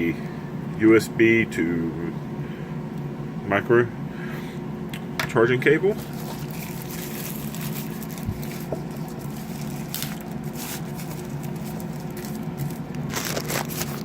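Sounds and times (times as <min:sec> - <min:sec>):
low background hum: 0:00.0 - 0:14.0
packaging rustling and crinkling: 0:06.0 - 0:14.0.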